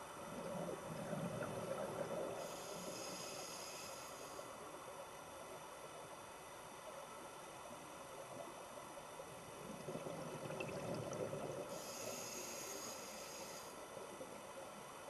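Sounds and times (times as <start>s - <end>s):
hissing breath through regulator: 2.3s - 4.6s, 11.7s - 14.0s.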